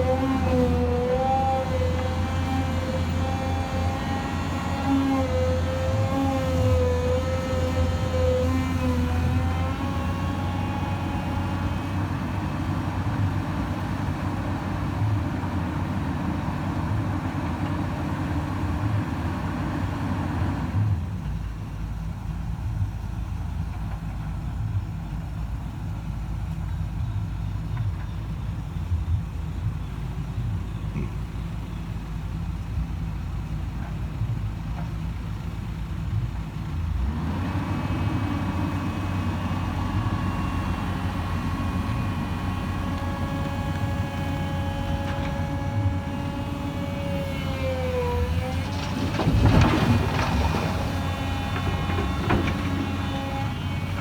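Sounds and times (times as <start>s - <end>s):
hydraulic whine: 0.0s - 12.1s, 37.8s - 54.0s
excavator diesel engine: 0.0s - 54.0s
dirt clattering and thudding: 48.4s - 54.0s.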